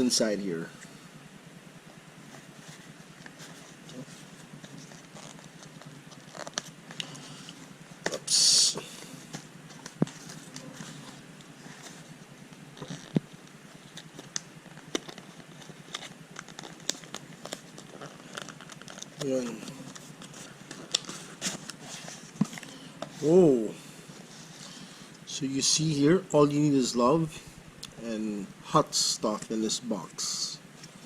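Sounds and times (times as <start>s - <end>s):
packaging rustle: 9.1s - 23.2s.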